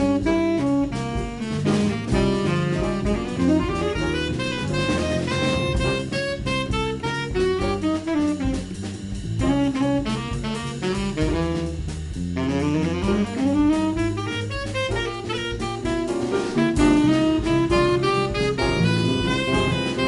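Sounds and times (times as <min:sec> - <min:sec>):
double bass: 0:00.0 - 0:20.0
drums: 0:00.0 - 0:20.0
piano: 0:00.0 - 0:20.0
saxophone running lines: 0:00.0 - 0:20.0.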